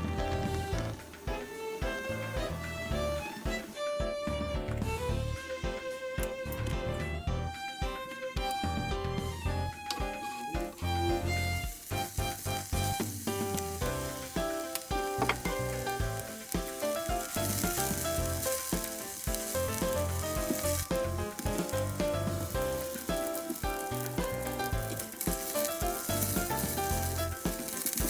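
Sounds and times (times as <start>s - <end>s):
background music: 0.0s - 28.0s
food sizzling in a pan: 9.8s - 28.0s.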